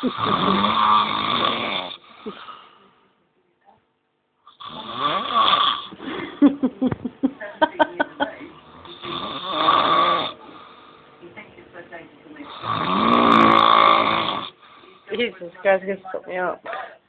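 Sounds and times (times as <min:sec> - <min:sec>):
man snoring loudly: 0:00.0 - 0:02.5, 0:04.5 - 0:06.0, 0:08.6 - 0:10.5, 0:12.4 - 0:14.6.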